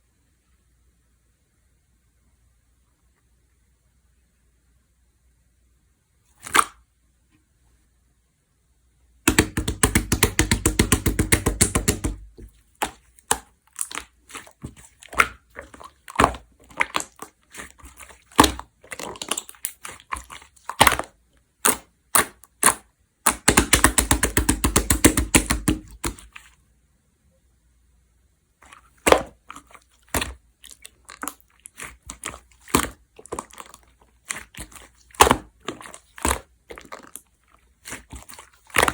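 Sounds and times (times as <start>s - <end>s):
slime squeezed by hand popping: 6.4s - 6.8s, 9.3s - 26.4s, 37.8s - 38.9s.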